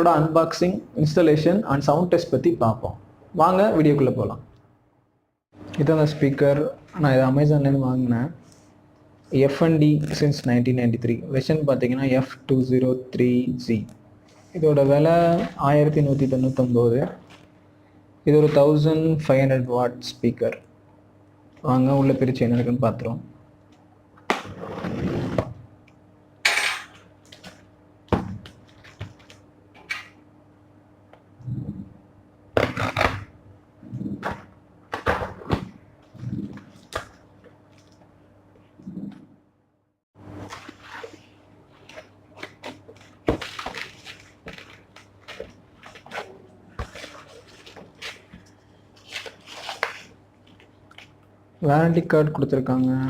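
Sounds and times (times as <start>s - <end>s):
cardboard scraping slide: 24.5s - 25.5s.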